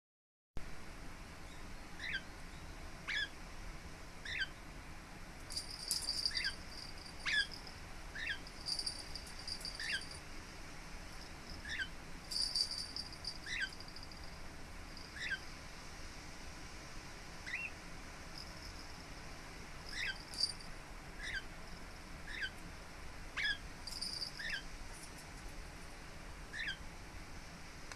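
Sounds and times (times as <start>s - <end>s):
parakeet chirping: 2.0s - 2.3s, 4.2s - 4.5s, 5.6s - 10.2s, 11.5s - 14.1s, 15.0s - 15.4s, 19.9s - 20.5s, 22.3s - 22.5s, 23.4s - 24.6s, 26.5s - 26.8s.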